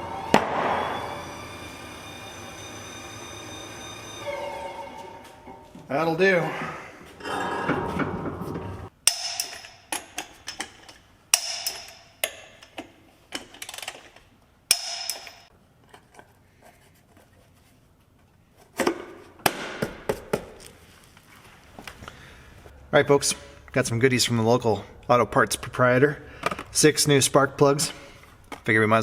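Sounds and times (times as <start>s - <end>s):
metal tools clanking: 9.1s - 16.2s.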